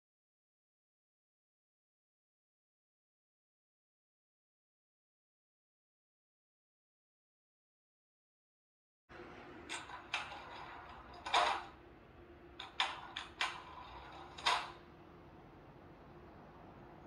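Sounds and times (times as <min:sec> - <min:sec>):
faint steady hum: 0:09.1 - 0:17.0.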